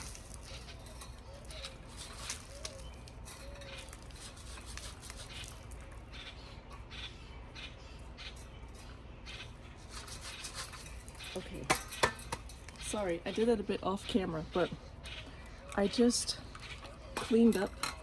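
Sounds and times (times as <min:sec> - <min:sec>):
faint bird calls and chirps: 0:00.0 - 0:18.0.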